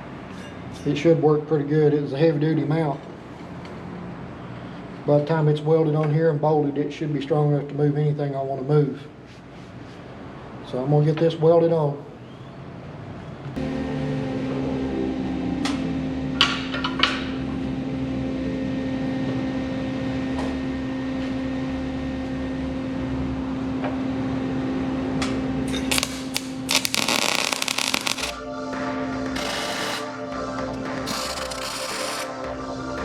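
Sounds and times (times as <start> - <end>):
welder humming: 25.6 - 33.0
welding arc crackling: 25.7 - 28.4, 29.3 - 32.4.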